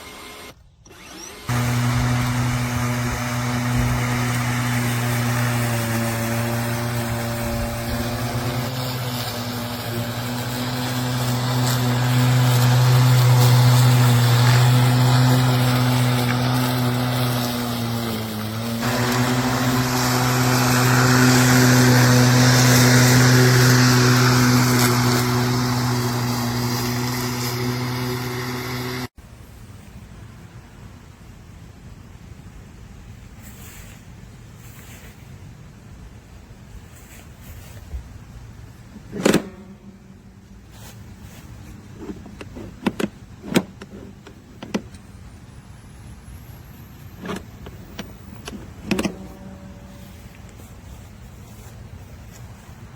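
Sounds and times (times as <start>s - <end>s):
electric lawn mower running: 0.0s - 29.1s, 47.2s - 51.0s
faint hiss: 29.2s - 42.0s.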